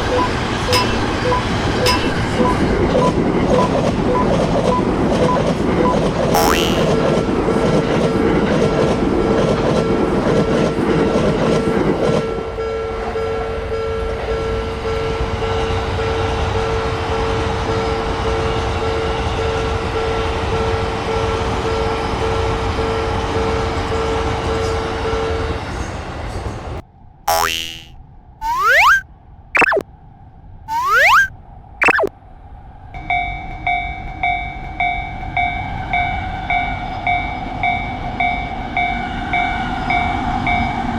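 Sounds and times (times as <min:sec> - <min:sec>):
train running on rails: 0:00.0 - 0:26.8, 0:32.8 - 0:40.9
steady tone: 0:27.3 - 0:29.0, 0:29.6 - 0:29.8, 0:30.7 - 0:32.1.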